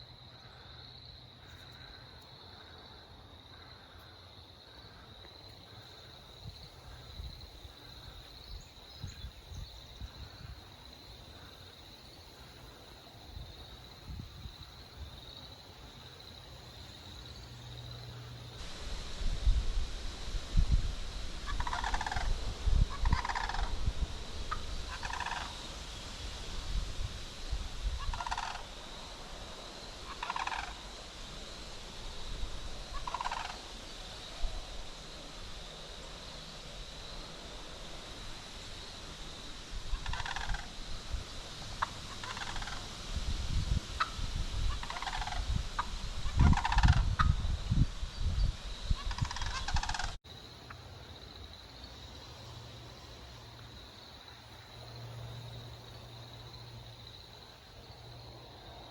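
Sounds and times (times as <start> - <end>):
turkeys gobbling: 21.5 - 22.3, 23.0 - 23.7, 24.5 - 25.5, 28.0 - 28.7, 30.1 - 30.8, 32.9 - 33.6, 40.0 - 40.7, 41.8 - 42.8, 44.8 - 47.0, 49.0 - 50.2.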